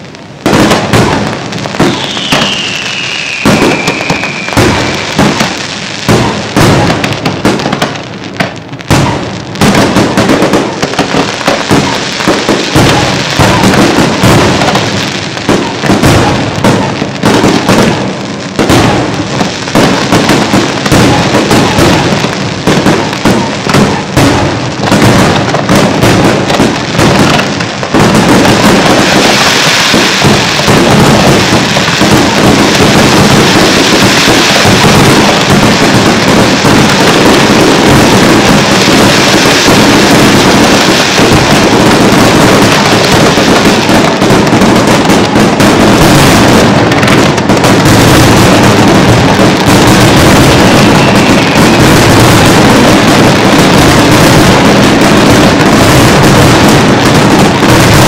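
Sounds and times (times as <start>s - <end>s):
fireworks bursting and crackling: 0.0s - 58.0s
falling firework whistle: 0.4s - 9.8s, 47.8s - 58.0s.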